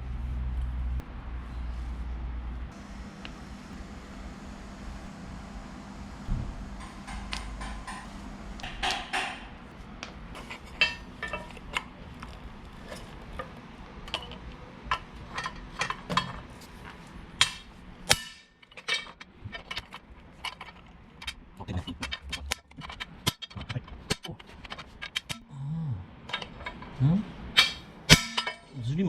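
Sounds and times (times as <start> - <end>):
low hum: 0.0 - 29.0
hand tools clanking on metal: 6.8 - 25.5, 26.2 - 28.8.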